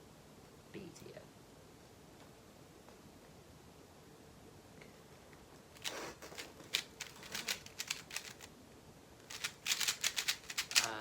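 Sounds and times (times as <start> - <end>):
puzzle cube plastic clacks: 5.8 - 8.5, 9.3 - 11.0.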